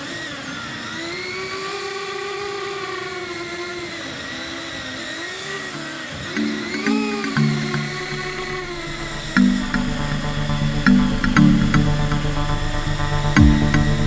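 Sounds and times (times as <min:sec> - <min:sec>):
quadcopter motors whining: 0:00.0 - 0:06.4
steady musical tones: 0:06.4 - 0:14.0.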